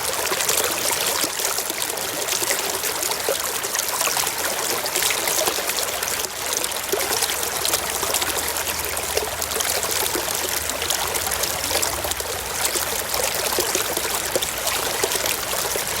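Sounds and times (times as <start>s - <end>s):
water flowing and trickling: 0.0s - 16.0s.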